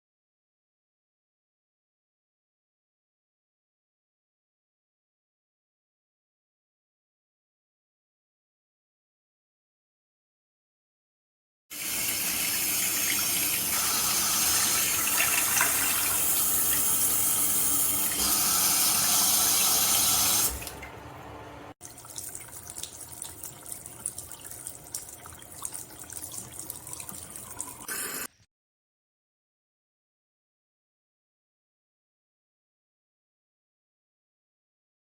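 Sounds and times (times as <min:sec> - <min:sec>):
faucet water pouring into sink: 0:11.8 - 0:28.3
water trickling: 0:12.4 - 0:27.9.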